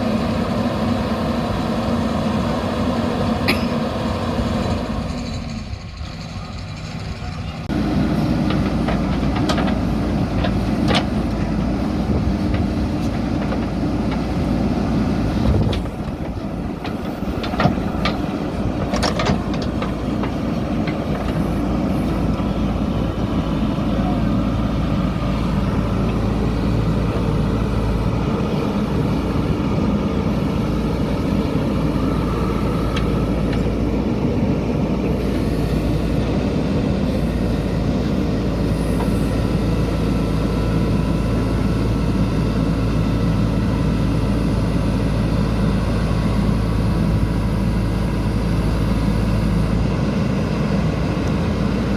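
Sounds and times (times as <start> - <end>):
diesel engine running under load: 0.0 - 51.9
sharp metal clanks: 3.5 - 4.0.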